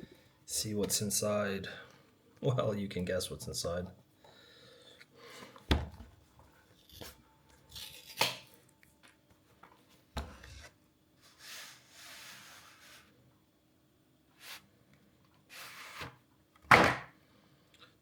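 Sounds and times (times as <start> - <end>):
dull thump: 5.7 - 6.0
soft sliding rustle: 10.3 - 13.2.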